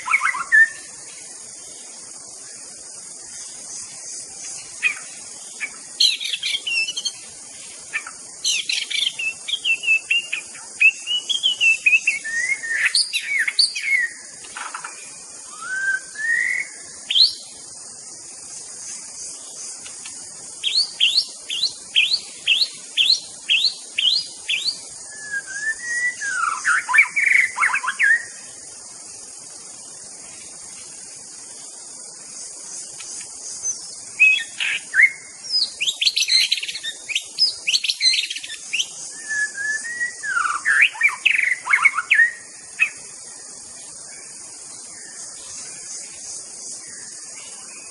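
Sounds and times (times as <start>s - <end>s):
steady high-pitched hiss: 0.0s - 47.9s
songbird whistling and warbling: 4.8s - 7.2s, 7.9s - 14.2s, 15.4s - 17.4s, 20.6s - 28.3s, 33.6s - 43.0s.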